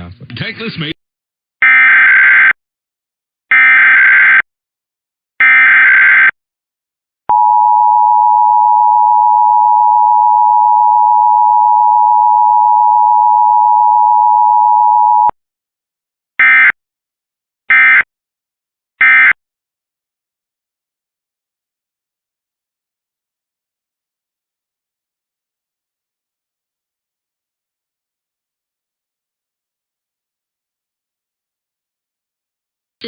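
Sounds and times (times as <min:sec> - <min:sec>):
two-tone attention signal: 0:07.3 - 0:15.3.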